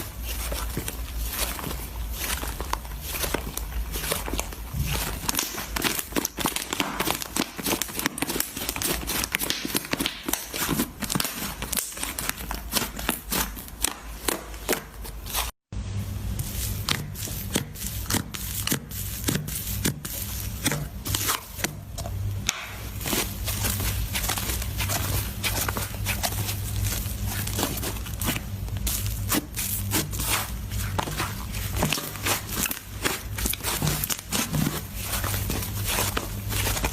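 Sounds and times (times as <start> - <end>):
slime crackling and popping: 0.2 - 14.7.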